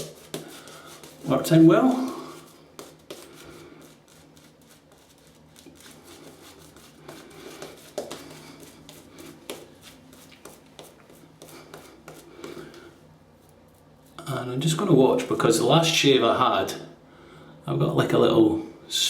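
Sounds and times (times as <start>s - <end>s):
shaving brush scrubbing stubble: 0.0s - 12.7s.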